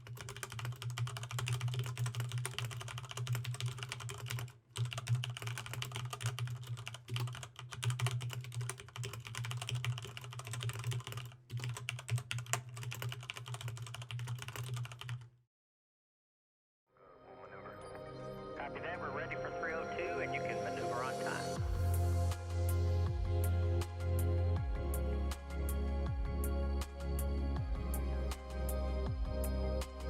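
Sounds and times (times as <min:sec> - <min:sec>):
fast mechanical keyboard typing: 0:00.0 - 0:15.3.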